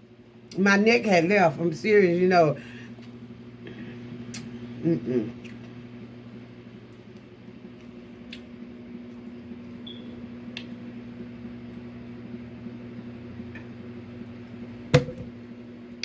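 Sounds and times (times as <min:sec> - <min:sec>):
low room hum: 0:00.0 - 0:16.0.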